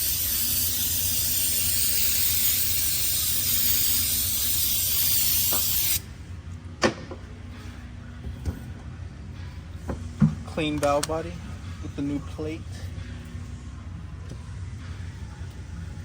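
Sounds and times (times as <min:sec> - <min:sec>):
pressurised spray hissing: 0:00.0 - 0:06.0.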